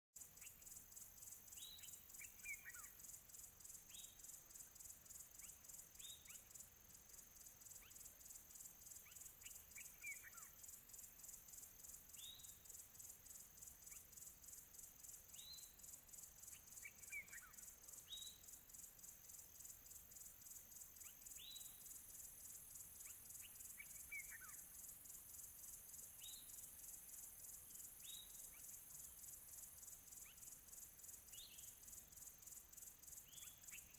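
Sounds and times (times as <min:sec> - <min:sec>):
insects trilling: 0:00.2 - 0:33.9.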